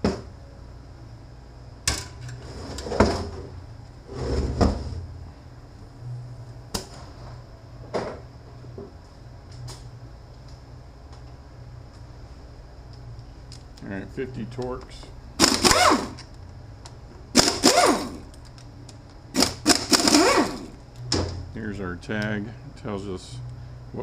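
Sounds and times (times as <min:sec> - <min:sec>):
metal scraping on workbench: 0:04.1 - 0:05.0.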